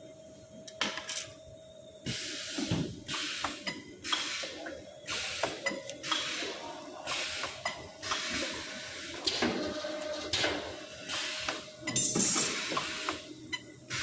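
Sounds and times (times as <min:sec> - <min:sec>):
machine hissing: 0:02.0 - 0:09.7, 0:10.3 - 0:13.3.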